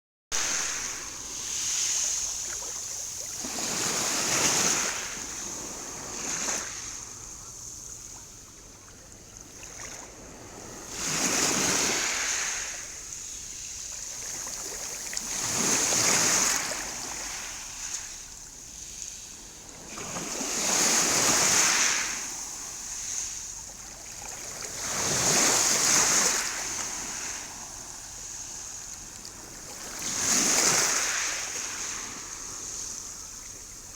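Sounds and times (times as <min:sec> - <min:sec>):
sea waves breaking: 0:00.3 - 0:08.2, 0:08.9 - 0:19.0, 0:19.7 - 0:33.9.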